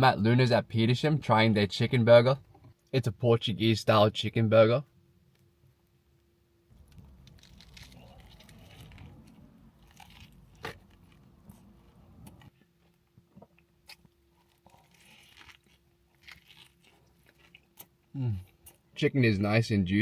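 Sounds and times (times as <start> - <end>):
biting and chewing burger: 6.7 - 18.9.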